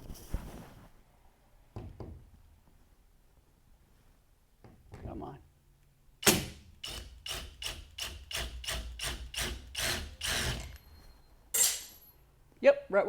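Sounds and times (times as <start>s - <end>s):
screwdriver turning screw: 6.2s - 10.8s.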